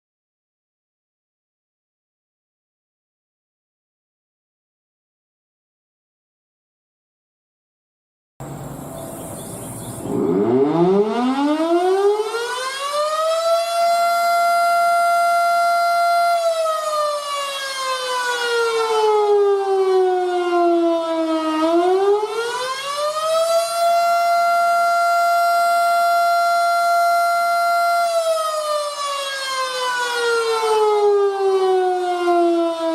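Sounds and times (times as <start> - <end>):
tornado warning siren: 8.4 - 32.9.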